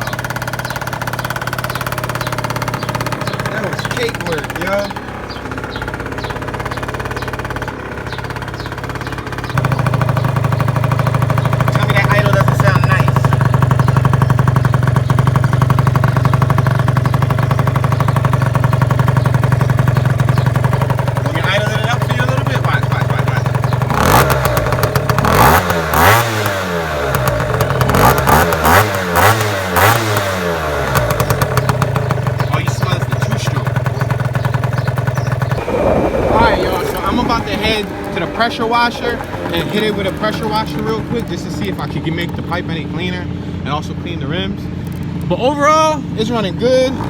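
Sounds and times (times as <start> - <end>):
scooter engine idling: 0.0 - 47.0.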